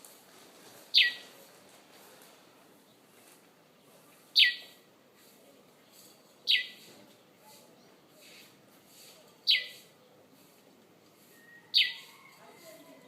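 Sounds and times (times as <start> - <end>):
bird chirping: 0.9 - 1.3, 4.4 - 4.8, 6.4 - 6.9, 9.4 - 9.8, 11.2 - 12.3.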